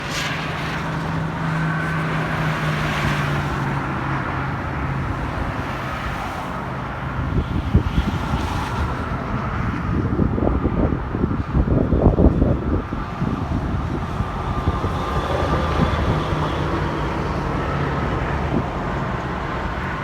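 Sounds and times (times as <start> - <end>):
road traffic noise: 0.0 - 20.0
wind gusts buffeting microphone: 0.0 - 20.0.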